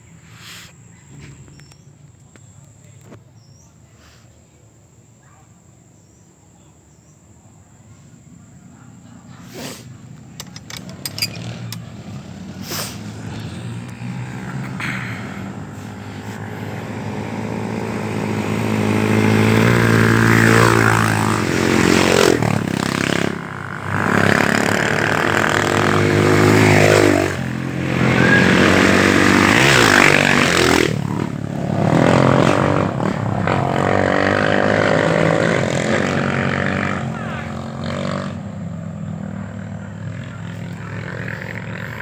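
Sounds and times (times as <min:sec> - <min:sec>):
dirt bikes passing at speed: 0:10.0 - 0:42.0.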